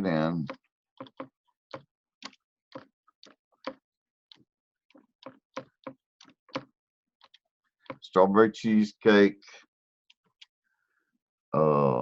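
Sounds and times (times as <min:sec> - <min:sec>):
computer keyboard typing: 0:00.5 - 0:08.0.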